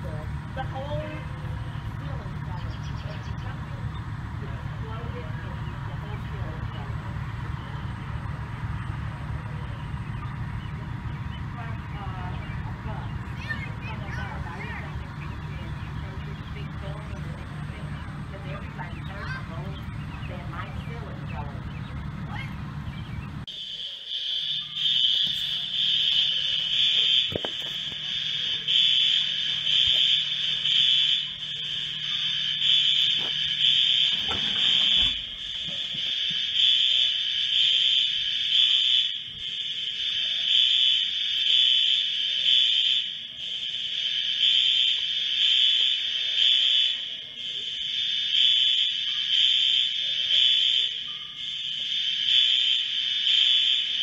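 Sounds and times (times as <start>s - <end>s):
fire alarm pulsing high tone: 23.4s - 54.0s.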